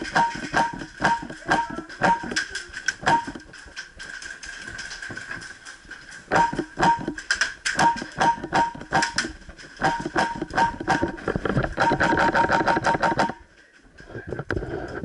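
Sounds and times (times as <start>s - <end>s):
airsoft gun shots: 0.0s - 2.4s, 7.8s - 11.1s.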